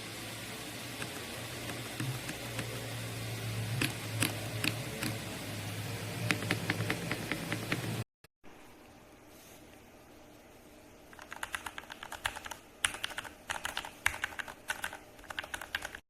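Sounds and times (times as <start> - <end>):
low hum and hiss: 0.0 - 16.0
mechanical keyboard keystrokes: 6.3 - 7.9, 11.1 - 16.0.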